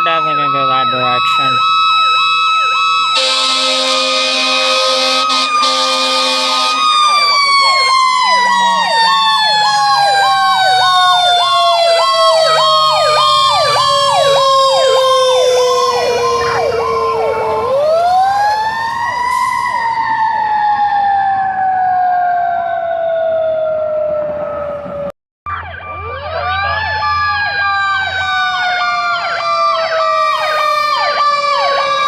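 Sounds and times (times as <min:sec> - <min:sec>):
fire truck siren winding: 0:00.0 - 0:32.0
yelping siren: 0:00.0 - 0:32.0
horn blast: 0:03.2 - 0:07.0.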